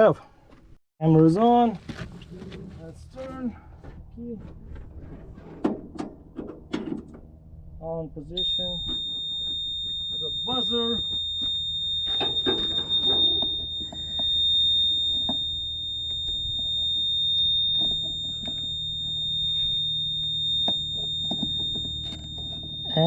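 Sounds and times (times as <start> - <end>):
high-pitched warning buzzer: 8.4 - 23.0.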